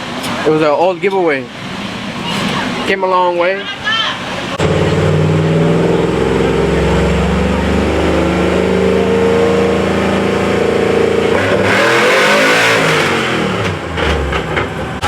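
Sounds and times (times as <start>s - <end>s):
car engine running: 3.9s - 15.0s
vehicle passing by: 4.4s - 15.0s.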